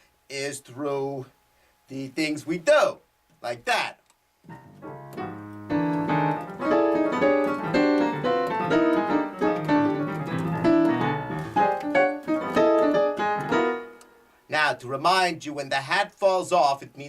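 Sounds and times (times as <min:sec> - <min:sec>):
keyboard stabbing dissonant chords: 0:04.5 - 0:14.1.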